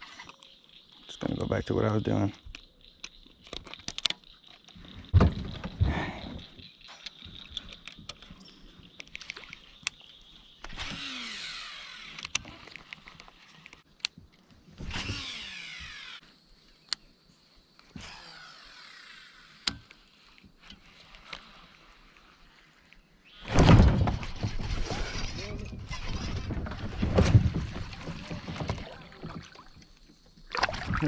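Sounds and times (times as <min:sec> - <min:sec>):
reel and rod clicks: 0:00.0 - 0:01.1, 0:01.8 - 0:04.8, 0:06.8 - 0:16.2, 0:16.8 - 0:17.1, 0:17.7 - 0:23.0
fishing reel whirring: 0:10.5 - 0:13.8, 0:14.8 - 0:16.2, 0:18.0 - 0:22.9.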